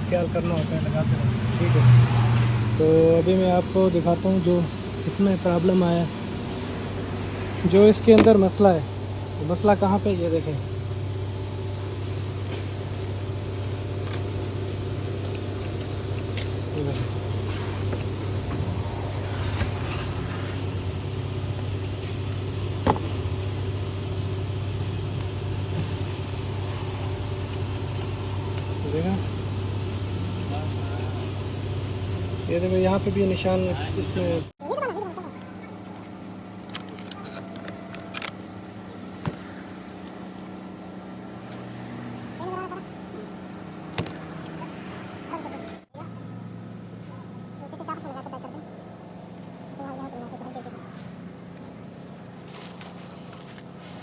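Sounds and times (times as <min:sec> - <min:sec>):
engine hum idling: 0:00.0 - 0:54.0.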